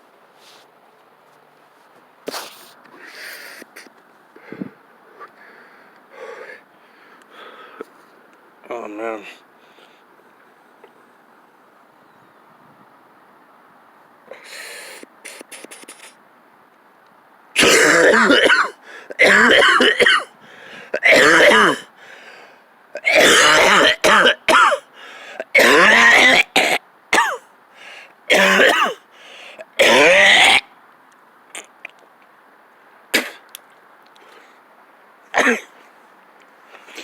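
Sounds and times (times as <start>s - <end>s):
man coughing hard: 17.6s - 20.3s, 21.0s - 21.9s, 23.0s - 27.4s, 28.3s - 29.0s, 29.8s - 30.6s, 35.4s - 35.7s.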